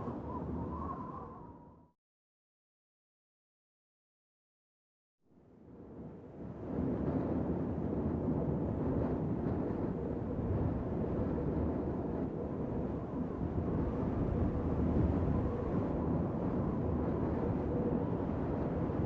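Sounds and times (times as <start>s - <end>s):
wind blowing: 0.0s - 1.9s.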